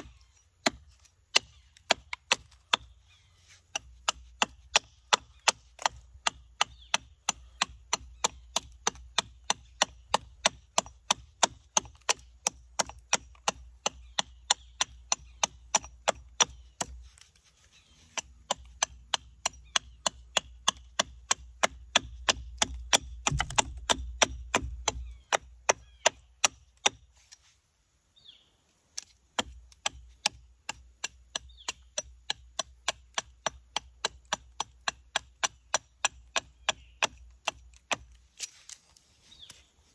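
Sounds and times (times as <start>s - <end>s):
knife carving wood: 0.0s - 27.6s, 28.8s - 39.7s.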